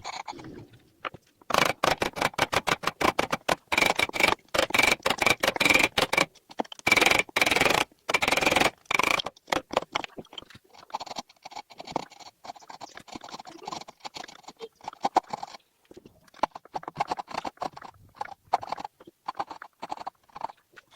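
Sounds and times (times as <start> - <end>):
hand tool scraping wood: 1.5 - 9.3.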